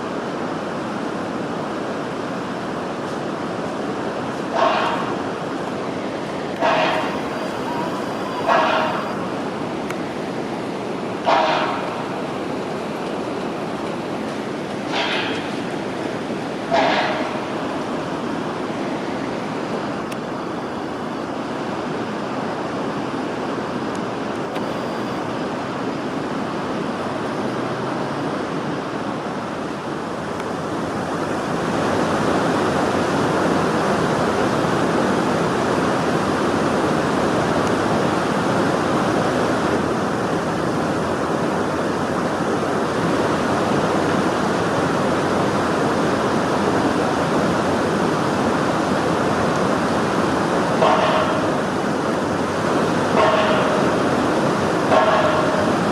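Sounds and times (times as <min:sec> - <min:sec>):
river water rushing: 0:00.0 - 0:55.9.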